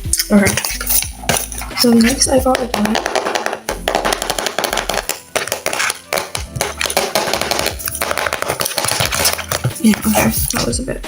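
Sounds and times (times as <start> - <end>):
plastic packaging crinkling: 3.2 - 10.7.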